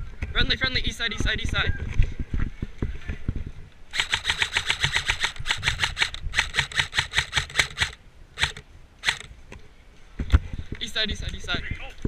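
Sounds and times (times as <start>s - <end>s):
airsoft rifle firing bursts: 3.9s - 9.3s.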